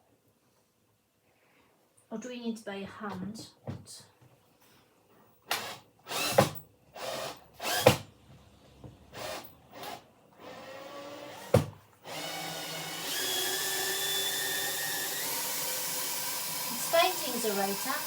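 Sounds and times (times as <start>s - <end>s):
power drill driving a screw: 5.5s - 8.1s, 9.1s - 18.0s.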